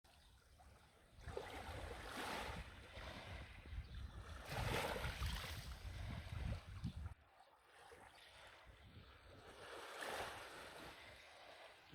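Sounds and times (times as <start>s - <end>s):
wind rumbling on microphone: 1.2s - 7.2s.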